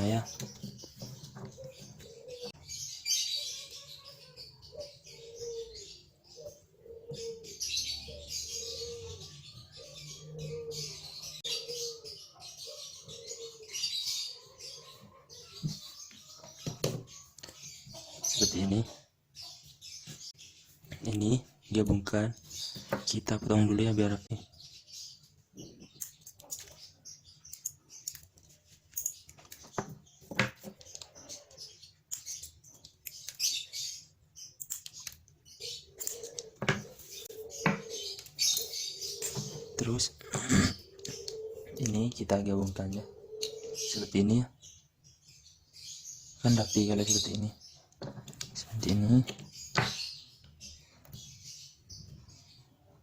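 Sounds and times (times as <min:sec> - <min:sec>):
small birds chirping: 0:00.0 - 0:53.0
dove cooing: 0:01.1 - 0:15.6, 0:35.6 - 0:41.9, 0:42.9 - 0:44.2
taps and rustles of parts: 0:27.5 - 0:31.1.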